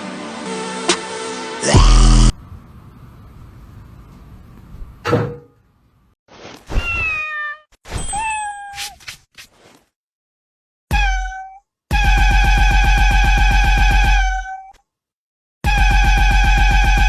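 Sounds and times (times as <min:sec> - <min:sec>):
thump: 0:05.0 - 0:05.4
cat meowing: 0:06.8 - 0:08.9, 0:10.9 - 0:11.6, 0:14.2 - 0:14.8.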